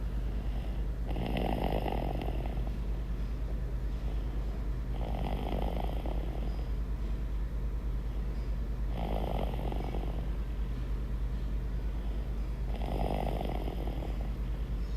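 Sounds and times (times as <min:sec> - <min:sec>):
snoring: 0:00.4 - 0:02.7, 0:04.9 - 0:06.5, 0:08.9 - 0:10.3, 0:12.7 - 0:14.4.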